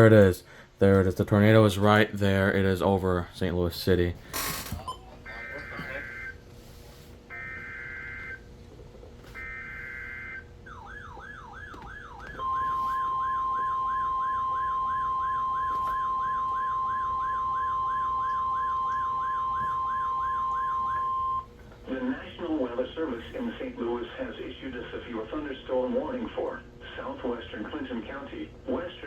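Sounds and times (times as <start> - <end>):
steady warning alarm tone: 4.4 - 6.4, 7.3 - 8.6, 9.2 - 21.5
electronic siren yelping: 5.3 - 6.4, 7.3 - 8.5, 9.3 - 21.5.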